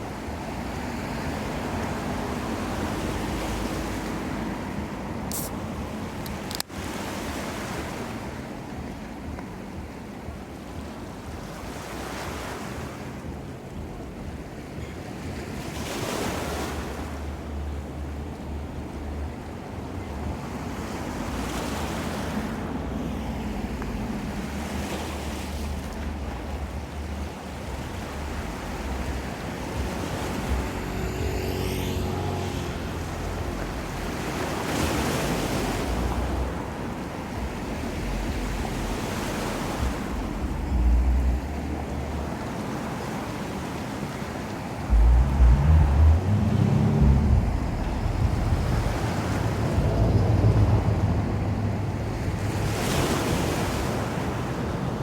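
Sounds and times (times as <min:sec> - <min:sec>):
ocean waves breaking: 0:00.0 - 0:55.0
wind buffeting microphone: 0:44.3 - 0:55.0.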